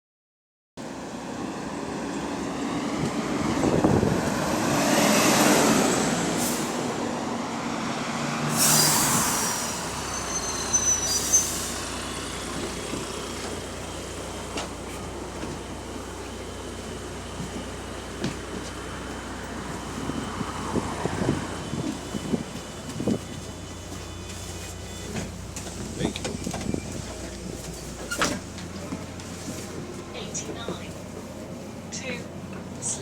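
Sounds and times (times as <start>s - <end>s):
bus diesel engine: 0.8s - 33.0s
air brake hisses: 8.5s - 9.9s.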